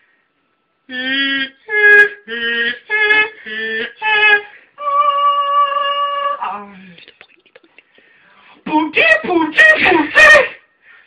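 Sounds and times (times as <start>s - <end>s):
woman singing wordless notes: 8.6s - 10.6s.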